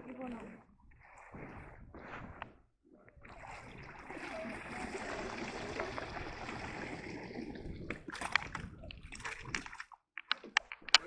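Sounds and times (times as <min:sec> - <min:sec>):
water splashing and sloshing: 0:00.0 - 0:11.0
sharp knocks and clicks: 0:10.2 - 0:11.0.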